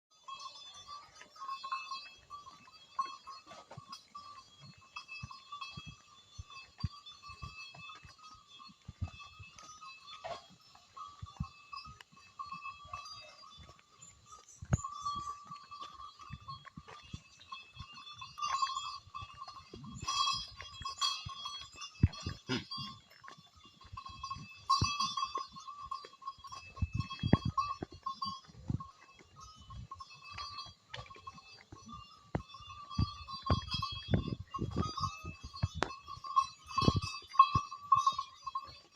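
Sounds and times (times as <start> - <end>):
goats bleating: 22.1 - 23.4.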